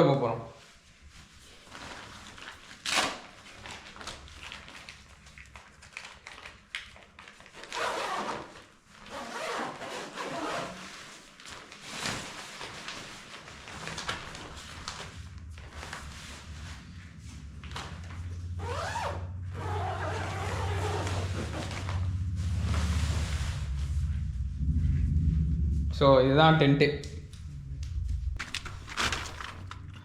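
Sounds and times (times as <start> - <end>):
tent fabric rustling: 0.7 - 24.2, 28.0 - 29.9
scraping sweeps: 14.4 - 29.9.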